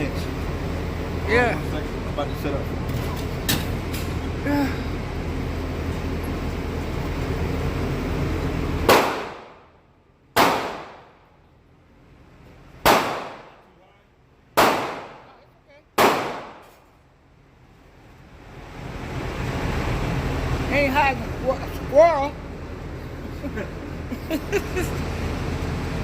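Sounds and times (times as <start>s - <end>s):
shotgun shots with echo: 8.9s - 9.6s, 10.4s - 11.1s, 12.8s - 13.6s, 14.6s - 15.3s, 16.0s - 16.8s.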